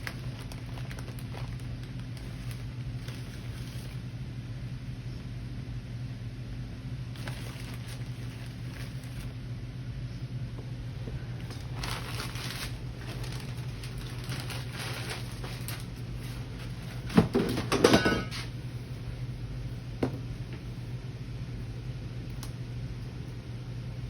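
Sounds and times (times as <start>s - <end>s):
soft scraping of sugar: 0.0s - 4.1s
steady low hum: 0.0s - 24.0s.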